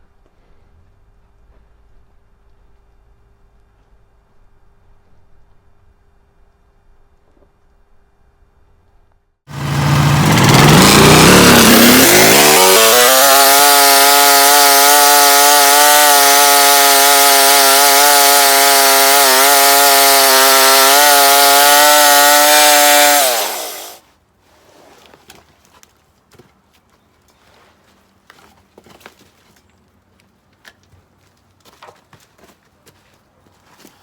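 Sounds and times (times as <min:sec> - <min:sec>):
gas engine throttling up: 0:09.5 - 0:24.0
saw blade cutting log: 0:09.5 - 0:24.0.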